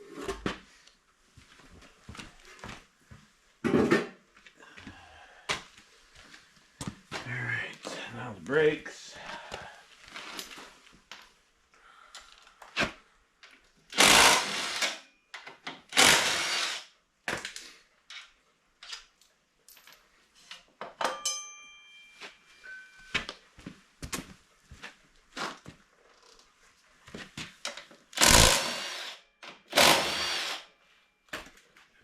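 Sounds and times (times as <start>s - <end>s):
power tool bursts: 13.9s - 15.0s, 15.9s - 16.9s, 28.2s - 30.7s
tools and metal parts clinking: 18.1s - 22.9s.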